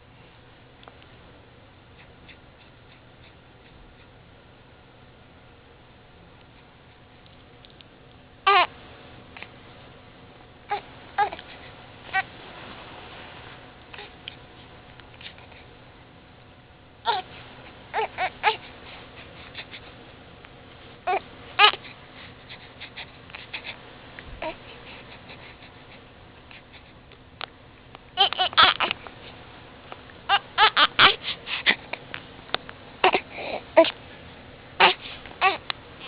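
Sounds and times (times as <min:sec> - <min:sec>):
infant crying in fretful bursts: 0:08.5 - 0:08.7, 0:10.7 - 0:11.4, 0:17.1 - 0:17.3, 0:17.9 - 0:18.6, 0:21.1 - 0:21.8, 0:28.2 - 0:28.9, 0:30.3 - 0:31.8, 0:33.0 - 0:33.9, 0:34.8 - 0:35.6.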